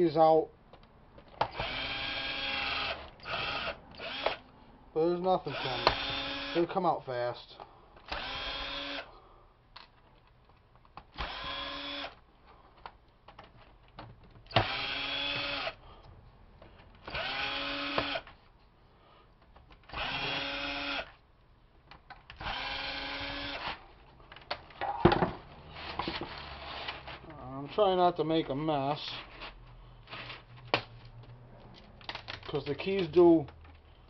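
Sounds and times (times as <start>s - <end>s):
power screwdriver whine: 1.5s - 4.4s, 17.1s - 18.3s, 19.9s - 21.1s.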